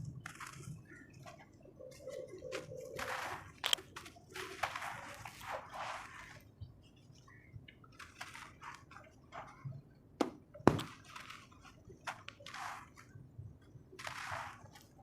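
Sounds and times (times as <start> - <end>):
sand-cement chunks crunching by hand: 10.7 - 13.0, 14.0 - 15.0.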